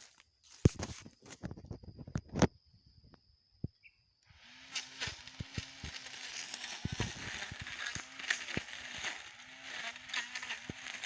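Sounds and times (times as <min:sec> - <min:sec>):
electric grass cutter humming: 0:04.2 - 0:11.0
grass stems snapping: 0:04.8 - 0:11.0.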